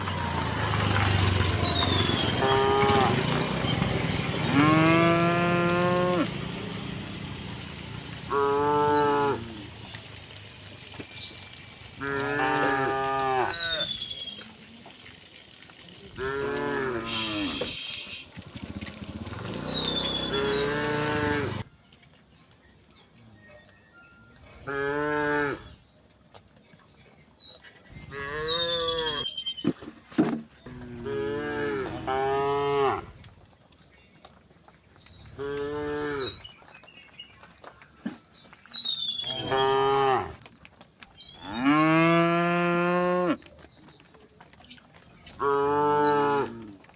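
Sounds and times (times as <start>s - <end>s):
cows mooing: 0.0s - 14.0s, 16.1s - 21.6s, 24.6s - 25.8s, 28.0s - 29.4s, 30.6s - 33.2s, 35.3s - 36.5s, 39.2s - 40.5s, 41.2s - 43.5s, 45.3s - 46.9s.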